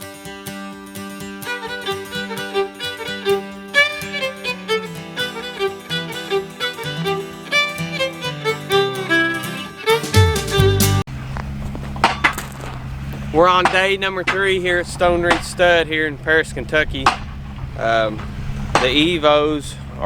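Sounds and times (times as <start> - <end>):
fiddle tune over drone: 1.2 - 11.1.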